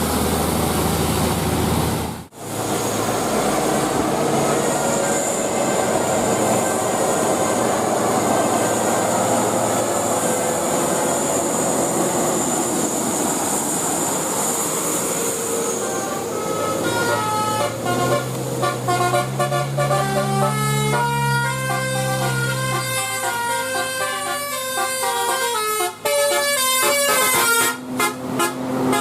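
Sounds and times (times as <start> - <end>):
vehicle noise rushing: 0.0 - 29.0
bus horn playing a tune: 4.5 - 10.4, 15.5 - 29.0.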